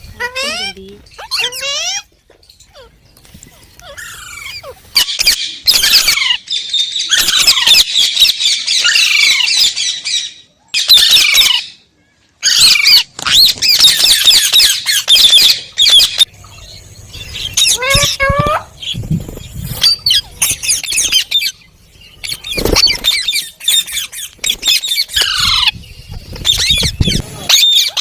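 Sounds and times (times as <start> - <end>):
parrot screeching: 0.2 - 2.1, 3.8 - 6.4, 7.0 - 9.9, 10.8 - 11.7, 12.4 - 16.3, 17.6 - 18.7, 22.4 - 25.8, 27.5 - 28.0.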